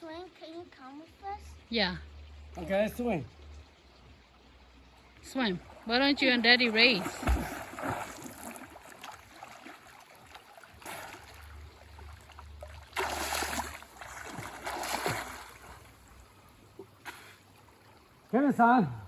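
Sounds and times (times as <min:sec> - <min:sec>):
water splashing from swimmers: 0:05.3 - 0:18.6.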